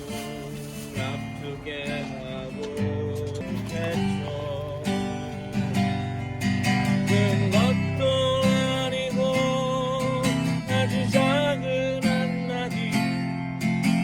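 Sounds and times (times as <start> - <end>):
acoustic guitar strumming: 0.0 - 14.0.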